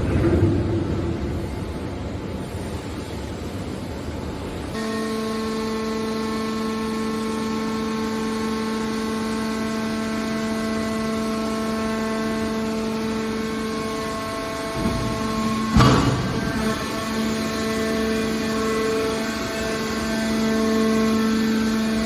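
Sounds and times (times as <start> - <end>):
hydraulic power unit humming: 0.0 - 22.0
steady pitched whine: 0.0 - 22.0.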